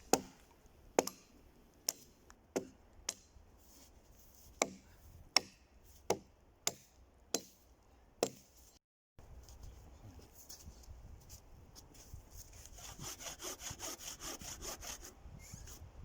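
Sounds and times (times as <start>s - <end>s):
axe chopping wood: 0.0s - 0.4s, 1.0s - 1.3s, 1.9s - 3.3s, 4.6s - 7.6s, 8.2s - 8.5s.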